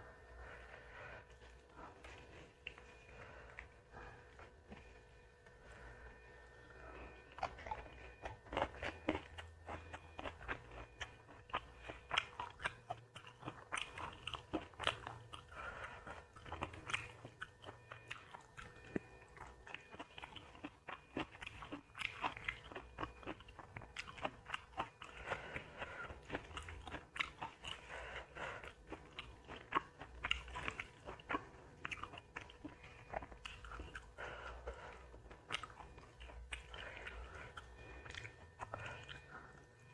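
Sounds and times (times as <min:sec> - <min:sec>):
person chewing crunchy food: 0:00.0 - 0:39.9.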